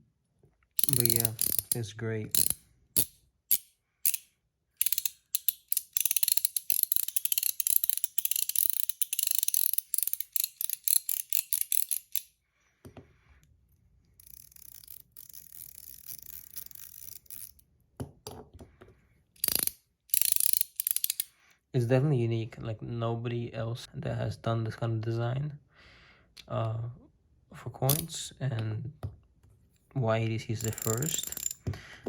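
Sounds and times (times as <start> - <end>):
fidget coin clicking: 0.8 - 4.2, 4.8 - 12.2, 14.2 - 17.6, 19.4 - 21.3, 30.6 - 31.6.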